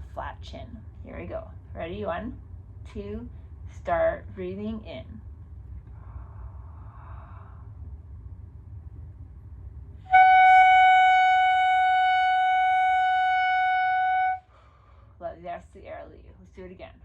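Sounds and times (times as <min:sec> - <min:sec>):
faint inward breath: 0:05.8 - 0:08.0, 0:14.4 - 0:15.2
clarinet mouthpiece tone: 0:10.1 - 0:14.4.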